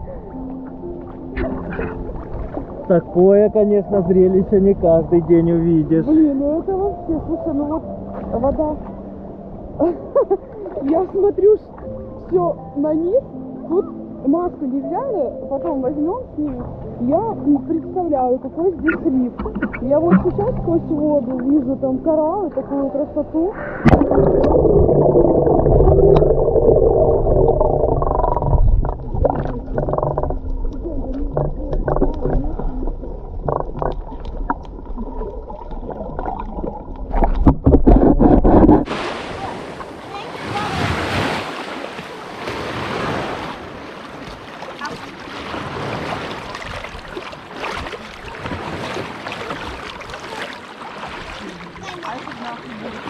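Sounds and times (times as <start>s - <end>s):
seawater splashing: 0.0s - 9.0s, 16.4s - 53.0s
muffled water sloshing underwater: 0.0s - 53.0s
short splashes: 37.1s - 53.0s.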